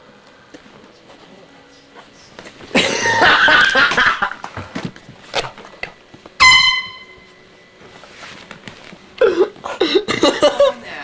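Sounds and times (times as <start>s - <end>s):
air horn blasts: 6.4s - 7.4s.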